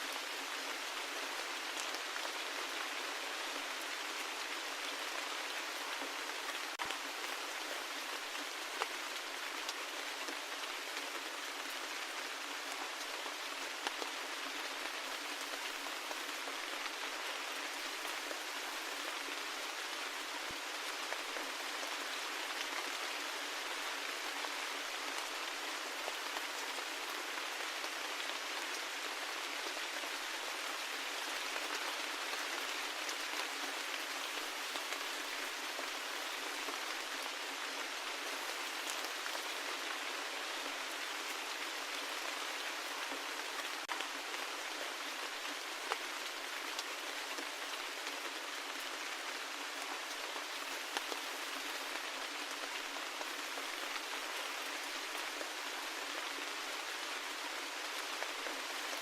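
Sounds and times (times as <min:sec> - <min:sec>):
steady rain hiss: 0:00.0 - 0:59.0
faint raindrop ticks: 0:50.0 - 0:55.4.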